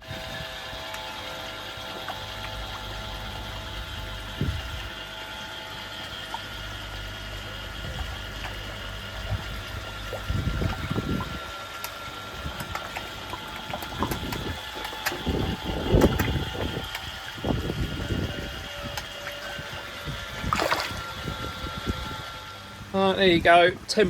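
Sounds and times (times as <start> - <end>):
pond equipment hum: 0.0 - 24.0
running water: 6.2 - 22.6.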